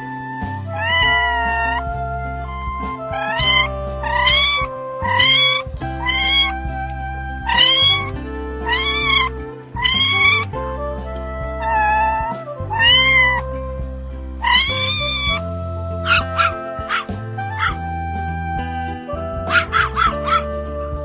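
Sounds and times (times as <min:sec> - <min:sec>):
background music with held notes: 0:00.0 - 0:21.0
cat meowing: 0:00.7 - 0:01.9, 0:02.6 - 0:06.7, 0:07.4 - 0:10.5, 0:11.6 - 0:13.5, 0:14.4 - 0:15.4, 0:16.1 - 0:17.8, 0:19.5 - 0:20.5.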